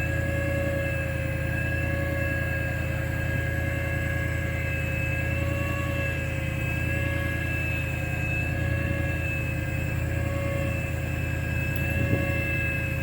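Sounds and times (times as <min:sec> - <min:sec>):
faint whining tones: 0:00.0 - 0:13.0
low machine drone: 0:00.0 - 0:13.0.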